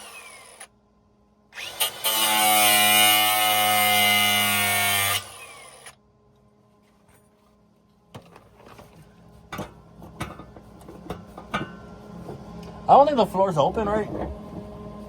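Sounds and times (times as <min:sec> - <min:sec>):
electric grinder running: 0:00.0 - 0:00.7, 0:01.6 - 0:06.0
tools clicking and knocking: 0:09.5 - 0:11.8.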